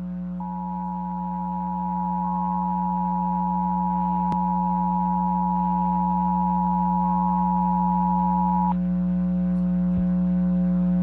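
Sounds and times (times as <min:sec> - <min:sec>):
low hum: 0:00.2 - 0:11.0
two-tone alert signal: 0:00.4 - 0:08.8.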